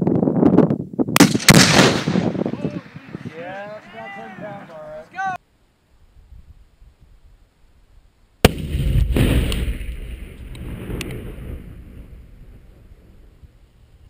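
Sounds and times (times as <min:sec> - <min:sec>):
explosion blast: 0:01.2 - 0:03.3, 0:08.4 - 0:13.4
explosion rumble: 0:08.4 - 0:13.6.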